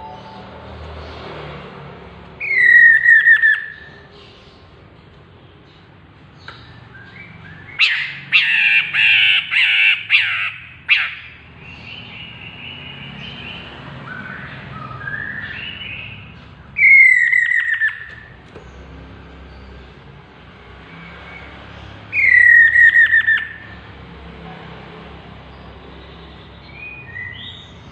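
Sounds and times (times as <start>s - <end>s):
bird harsh rasping calls: 7.8s - 11.4s, 15.7s - 18.8s.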